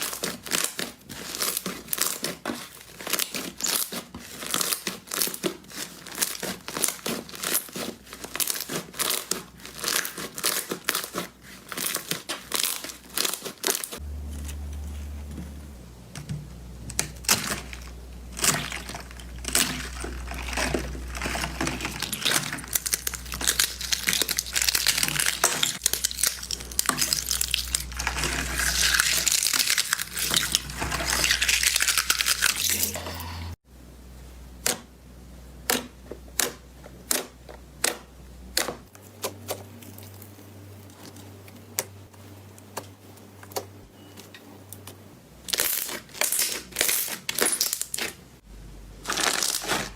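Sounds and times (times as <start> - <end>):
slime crackling and popping: 0.0 - 14.0, 16.9 - 32.7, 45.5 - 48.2, 49.0 - 49.9.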